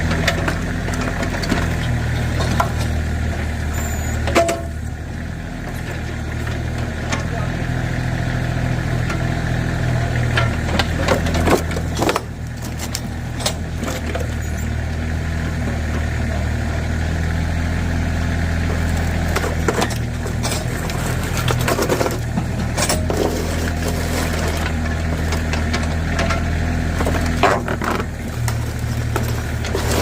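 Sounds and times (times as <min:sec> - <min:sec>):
tractor engine running under load: 0:00.0 - 0:30.0
junk cracking and crunching: 0:10.2 - 0:15.0, 0:18.7 - 0:30.0.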